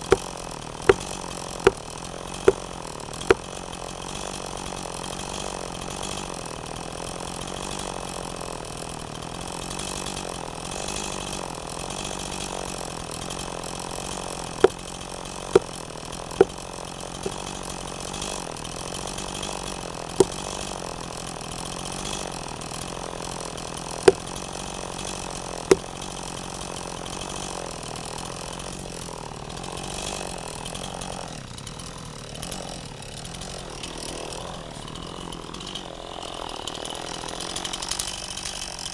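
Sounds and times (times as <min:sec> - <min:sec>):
motor running: 0:00.0 - 0:04.9, 0:13.3 - 0:37.6.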